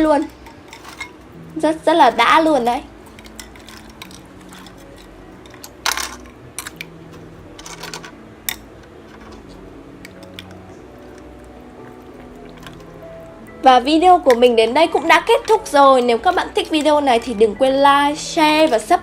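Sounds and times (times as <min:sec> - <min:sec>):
plastic toy charms clicking: 0:02.6 - 0:10.6.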